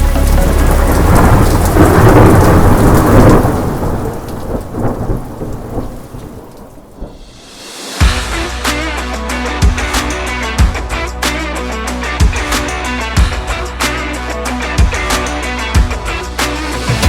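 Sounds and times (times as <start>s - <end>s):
heavy rain: 0.0s - 17.0s
thunder rolling: 0.1s - 8.4s.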